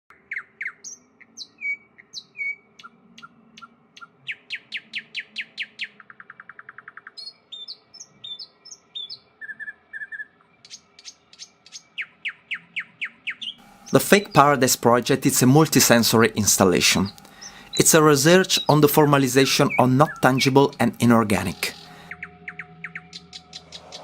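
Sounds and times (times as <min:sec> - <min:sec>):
downward-sweeping bird whistles: 0:00.1 - 0:14.4, 0:16.9 - 0:18.8, 0:21.5 - 0:24.0
sharp bird chirps: 0:00.1 - 0:14.6, 0:16.8 - 0:24.0
fast bird trill: 0:00.2 - 0:24.0.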